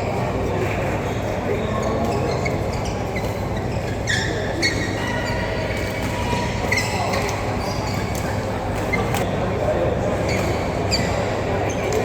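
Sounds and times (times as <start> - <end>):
shoes squeaking on court floor: 1.8 - 5.4.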